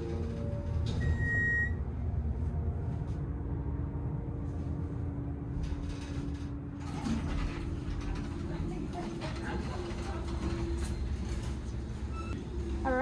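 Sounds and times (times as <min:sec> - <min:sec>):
elevator drive hum: 0:00.0 - 0:13.0
elevator rumbling: 0:00.0 - 0:13.0
rattles and clicks: 0:05.6 - 0:11.9.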